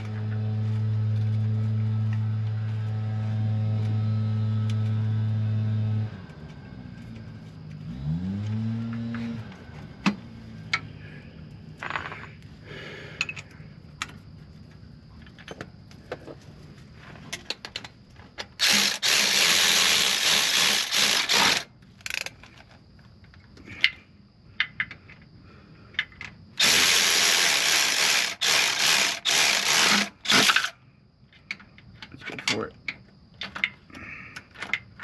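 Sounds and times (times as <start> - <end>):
power ratchet running: 18.6 - 22.3, 26.6 - 30.7.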